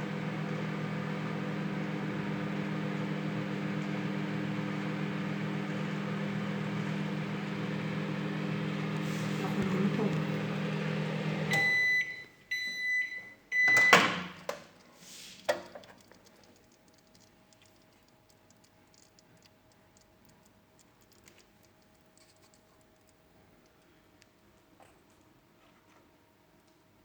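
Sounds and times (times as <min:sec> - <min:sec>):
microwave oven humming: 0:00.0 - 0:14.4
microwave beeps: 0:10.4 - 0:14.4
small clicks: 0:15.8 - 0:24.5.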